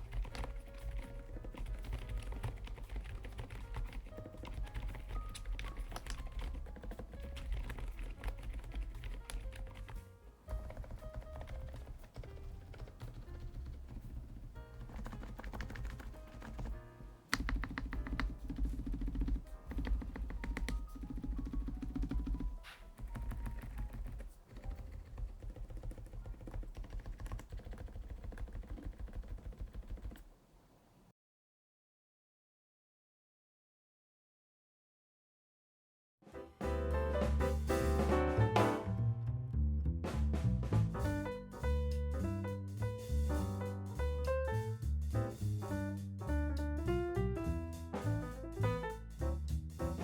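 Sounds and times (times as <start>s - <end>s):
keyboard keystroke clicks: 0.0s - 10.0s, 14.8s - 30.3s
background music with bass: 36.5s - 50.0s.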